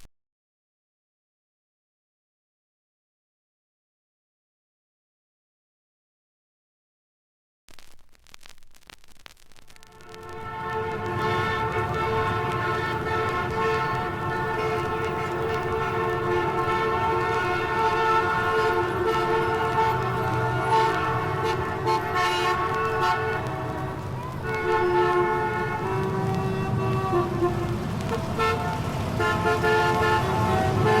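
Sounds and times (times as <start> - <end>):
vehicle horns blowing: 9.8 - 31.0.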